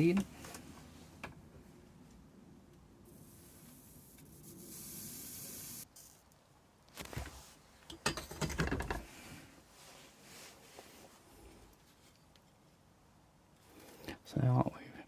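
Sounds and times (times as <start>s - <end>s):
soldering iron tip hissing: 3.2s - 5.8s.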